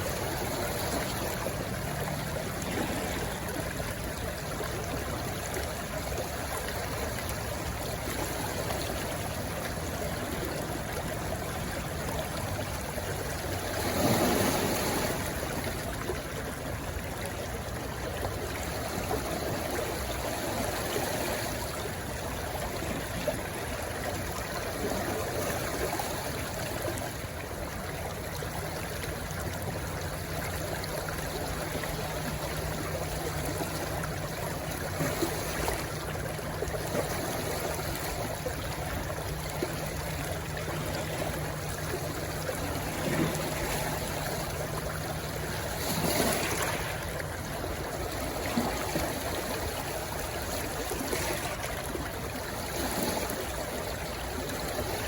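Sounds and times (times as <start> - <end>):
stream rushing and splashing: 0.0 - 55.0.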